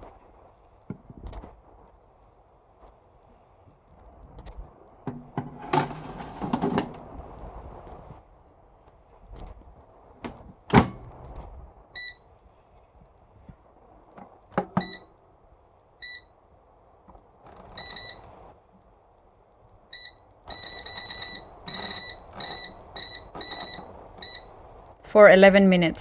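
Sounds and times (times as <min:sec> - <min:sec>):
control panel beeps: 0:12.0 - 0:12.2, 0:14.7 - 0:15.1, 0:16.0 - 0:16.3, 0:17.7 - 0:18.3, 0:19.9 - 0:24.5.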